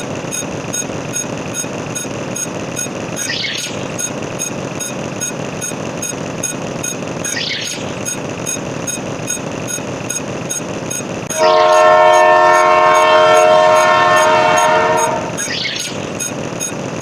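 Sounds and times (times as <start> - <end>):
even ticking: 0.0 - 11.4, 12.5 - 17.0
train chord horn: 11.3 - 15.5.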